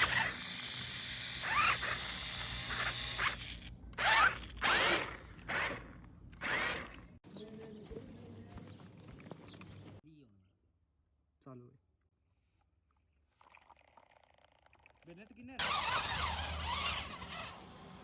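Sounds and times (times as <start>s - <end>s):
toy car electric motor whining: 0.0s - 7.2s, 15.6s - 18.0s.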